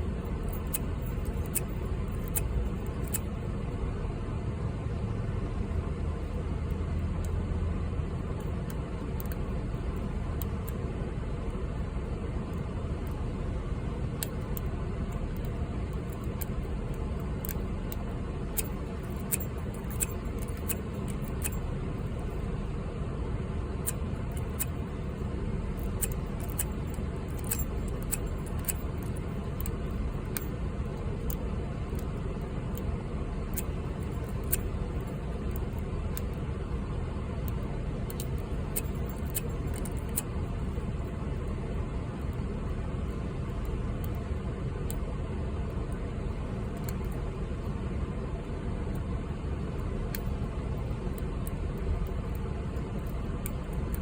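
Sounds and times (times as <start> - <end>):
lock pick metallic clicks: 0.2 - 3.4, 8.4 - 10.8, 14.2 - 22.5, 23.8 - 24.9, 25.8 - 30.6, 31.2 - 32.9, 33.5 - 36.4, 37.4 - 41.1, 46.8 - 47.2, 50.0 - 54.0.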